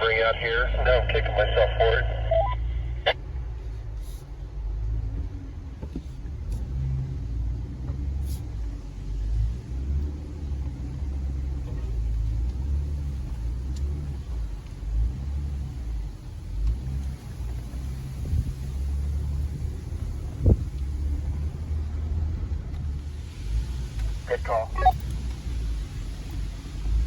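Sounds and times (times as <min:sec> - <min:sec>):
engine rumbling from inside cab: 0:00.0 - 0:27.0.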